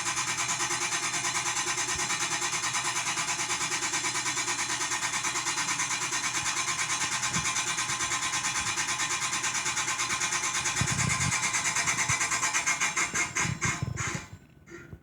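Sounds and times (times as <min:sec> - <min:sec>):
kitchen appliance grinding pulses: 0:04.9 - 0:15.0.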